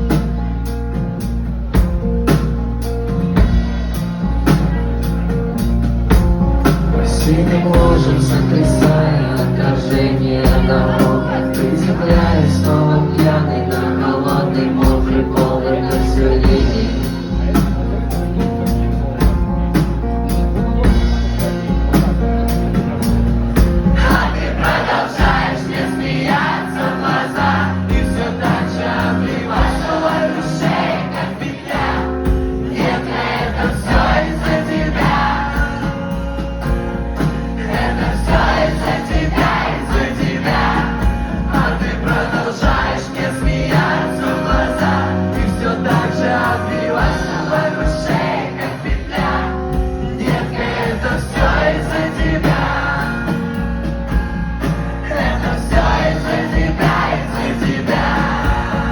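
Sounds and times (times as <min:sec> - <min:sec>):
acoustic band playing: 0:00.0 - 0:58.9
several voices singing: 0:06.7 - 0:17.8, 0:23.8 - 0:58.9.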